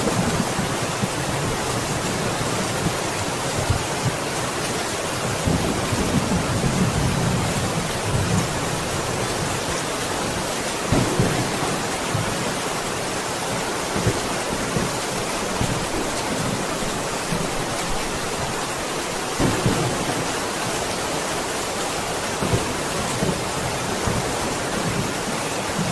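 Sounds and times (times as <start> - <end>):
heavy rain hiss: 0.0 - 25.9
low thunder rumbles: 10.9 - 12.6.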